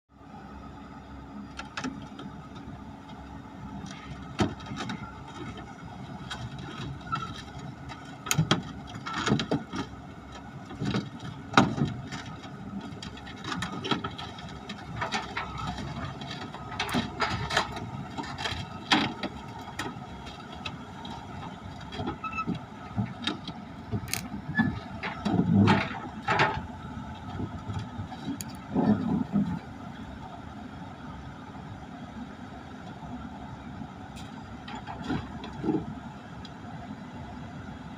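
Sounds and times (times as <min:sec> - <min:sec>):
excavator engine drone: 0:00.1 - 0:37.9
metal clanks and knocks: 0:21.8 - 0:26.7
metal squeals: 0:22.2 - 0:22.6.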